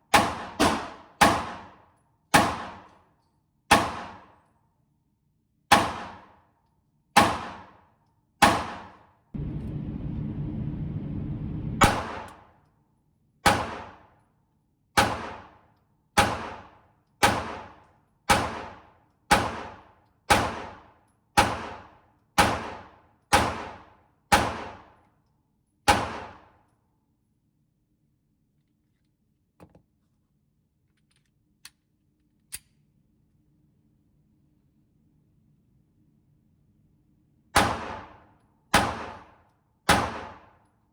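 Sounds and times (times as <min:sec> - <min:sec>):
pistol shots echoing indoors: 0:00.0 - 0:05.0, 0:05.6 - 0:09.8, 0:11.8 - 0:27.2, 0:37.5 - 0:40.9.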